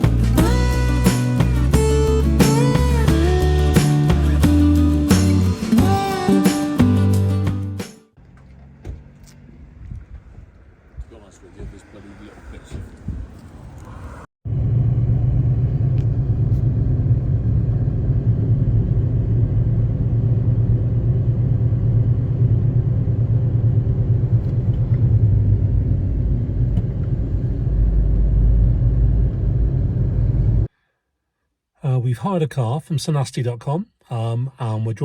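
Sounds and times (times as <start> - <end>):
car engine and road noise: 0.0 - 30.7.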